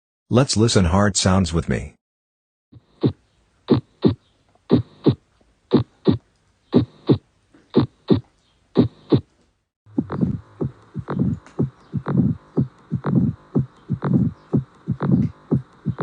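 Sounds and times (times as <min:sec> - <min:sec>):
heartbeat lub-dub: 0:02.8 - 0:06.2, 0:06.8 - 0:07.2, 0:08.8 - 0:09.3, 0:09.9 - 0:16.0.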